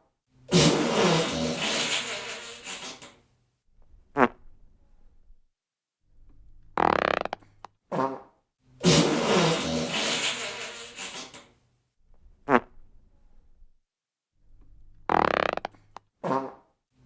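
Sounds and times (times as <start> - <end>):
fart sounds: 0.5 - 3.1, 4.1 - 4.4, 6.8 - 7.4, 8.8 - 11.4, 12.4 - 12.8, 15.1 - 16.6.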